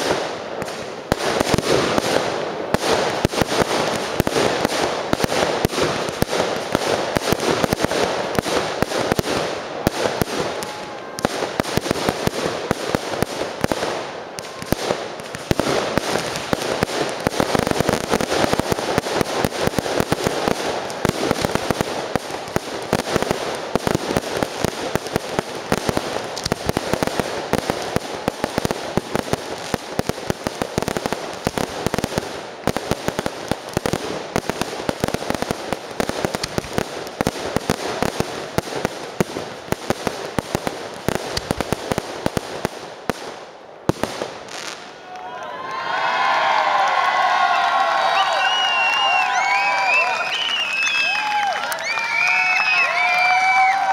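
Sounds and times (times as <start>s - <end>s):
fireworks bangs and crackles: 0.0s - 45.0s, 47.7s - 53.9s.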